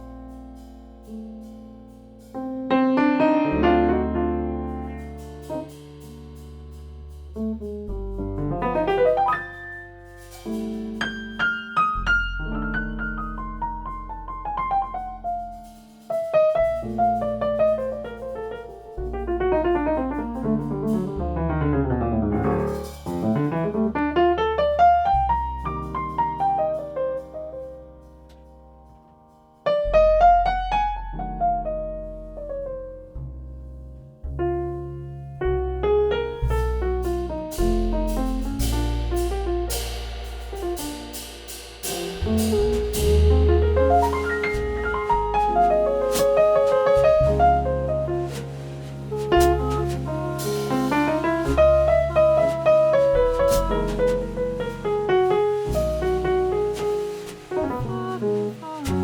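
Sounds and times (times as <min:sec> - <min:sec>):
jazz piano ballad: 0:00.0 - 0:59.0.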